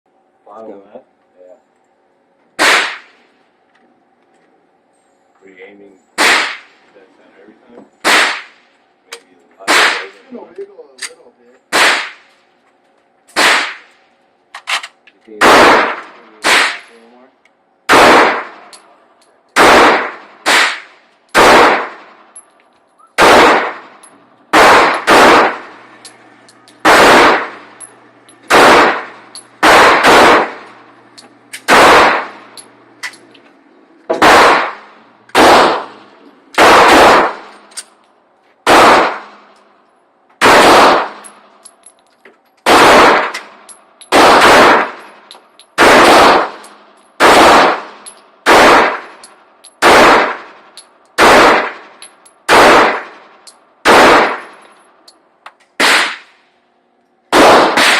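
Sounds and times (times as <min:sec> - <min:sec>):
pistol shots: 0:02.6 - 0:03.2, 0:06.2 - 0:06.8, 0:08.0 - 0:08.7, 0:09.6 - 0:10.2, 0:11.7 - 0:12.3, 0:13.3 - 0:13.9, 0:15.4 - 0:17.0, 0:17.9 - 0:18.8, 0:19.5 - 0:22.2, 0:23.1 - 0:33.3, 0:34.1 - 0:37.8, 0:38.6 - 0:39.5, 0:40.4 - 0:41.5, 0:42.6 - 0:50.6, 0:51.2 - 0:54.6, 0:55.8 - 0:56.4, 0:57.3 - 0:57.9.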